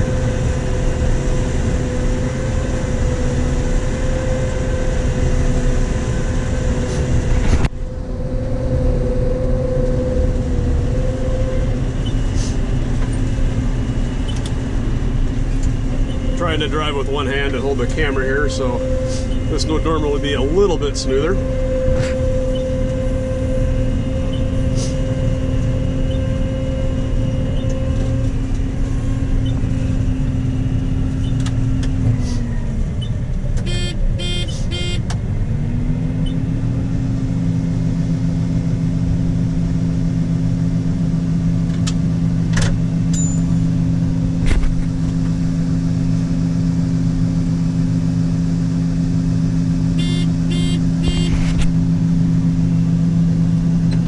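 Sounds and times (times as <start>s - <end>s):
combine harvester running: 0.0s - 54.0s
rapid electronic beeping: 50.0s - 51.3s.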